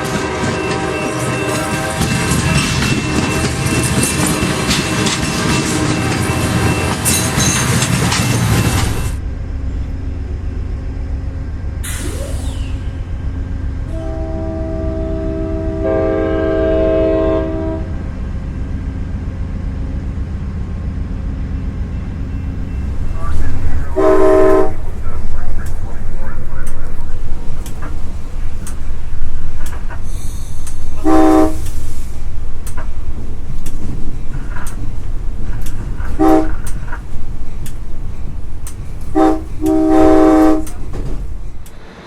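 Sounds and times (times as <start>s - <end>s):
train horn chord: 0.0s - 2.5s, 13.9s - 18.0s, 23.1s - 25.7s, 31.0s - 31.7s, 36.2s - 36.8s, 39.1s - 40.8s
train wheel and rail noise: 0.0s - 42.0s
low rumble: 9.1s - 14.7s, 17.8s - 41.8s.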